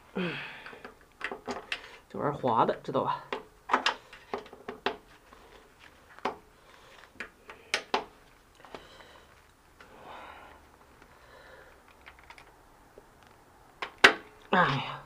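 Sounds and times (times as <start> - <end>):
person breathing out: 0.1 - 0.9, 8.6 - 11.9.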